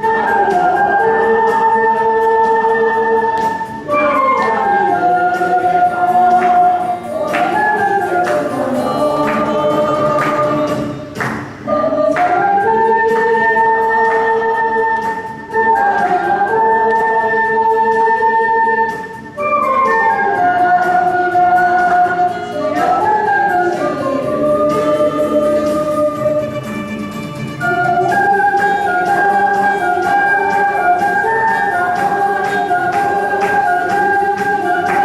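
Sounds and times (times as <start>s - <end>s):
crowd singing in unison: 0.0s - 26.6s, 27.6s - 35.0s
ocarina ensemble: 0.0s - 35.0s.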